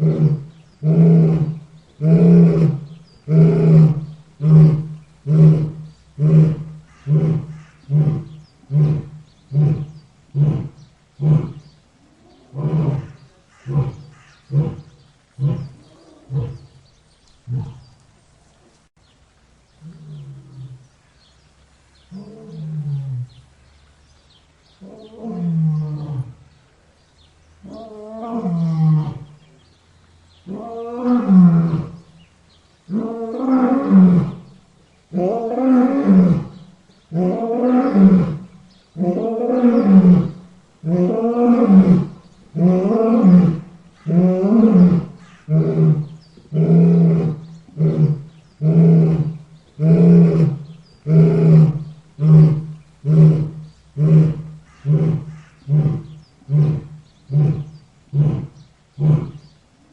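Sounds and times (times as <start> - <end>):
lion roaring: 0.0 - 16.8, 17.5 - 18.0, 35.1 - 59.5.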